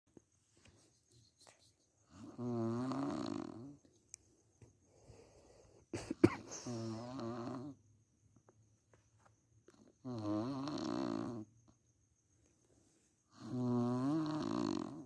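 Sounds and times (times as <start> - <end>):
person snoring: 2.1 - 3.8, 6.4 - 7.8, 10.0 - 11.4, 13.4 - 15.0.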